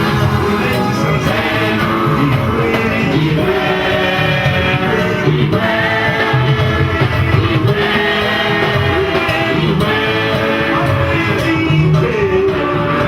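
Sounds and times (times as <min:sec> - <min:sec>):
singing over a band: 0:00.0 - 0:13.0.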